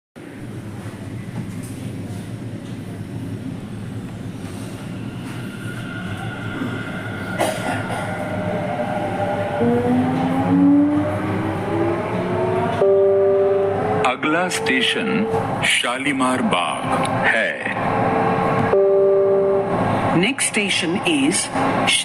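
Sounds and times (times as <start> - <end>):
train running rumble: 0.2 - 12.8.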